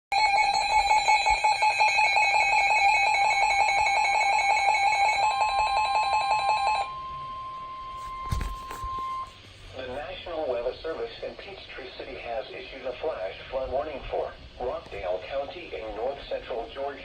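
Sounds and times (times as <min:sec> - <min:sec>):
electronic alarm beeping: 0:00.1 - 0:09.4
steady alarm tone: 0:00.1 - 0:09.5.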